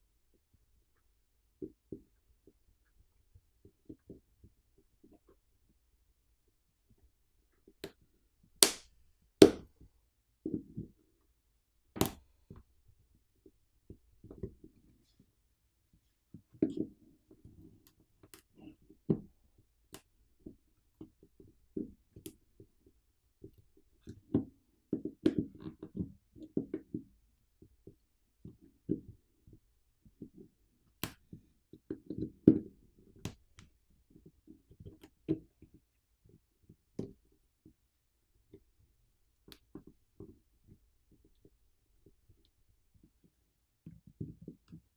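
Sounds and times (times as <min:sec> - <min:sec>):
tool tapping plastic: 0:08.6 - 0:08.8, 0:09.4 - 0:09.6.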